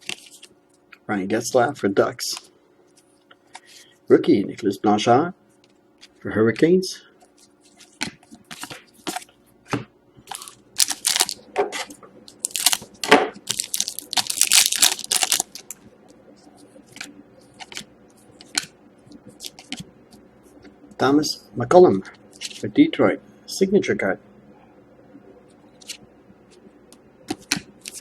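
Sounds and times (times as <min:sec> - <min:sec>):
wrapper tearing and crinkling: 0:10.3 - 0:11.4, 0:12.3 - 0:15.8.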